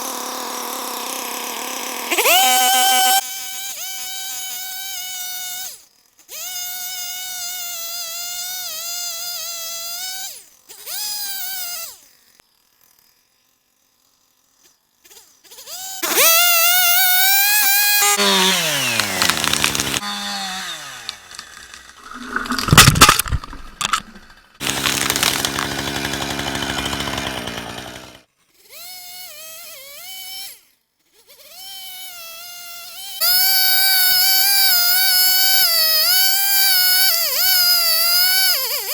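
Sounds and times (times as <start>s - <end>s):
chainsaw cutting wood: 0.0s - 12.1s, 15.0s - 30.6s, 31.4s - 38.9s
cracks and thumps: 18.8s - 20.0s, 21.0s - 26.1s.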